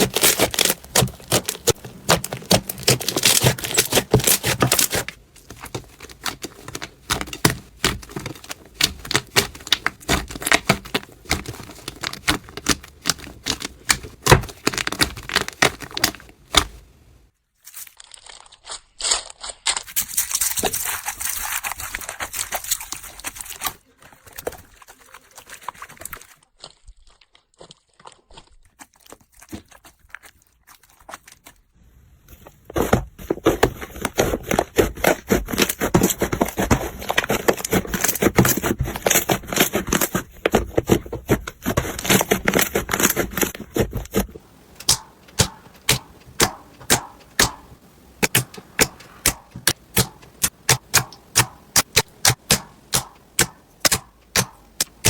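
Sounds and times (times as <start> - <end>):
slime crinkling and crackling: 0.0 - 55.0
sharp clicking pops: 44.8 - 55.0.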